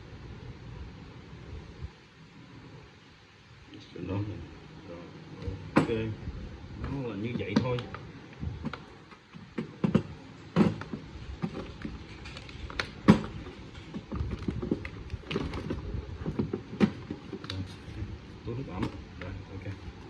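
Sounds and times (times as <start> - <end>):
knocks of hard objects handled: 6.8 - 17.6.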